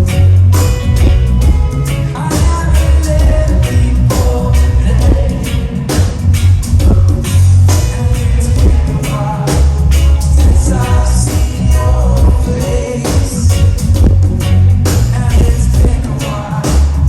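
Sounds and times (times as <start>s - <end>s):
heavy bass line: 0.0s - 17.0s
reggae band playing: 0.0s - 17.0s
steady drum beat: 0.0s - 17.0s
person singing: 2.1s - 6.2s, 6.8s - 13.8s, 15.0s - 17.0s.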